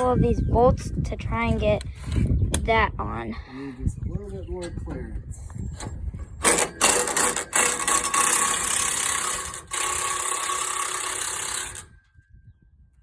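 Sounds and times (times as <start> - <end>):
power tool running on bolt: 6.4 - 12.0.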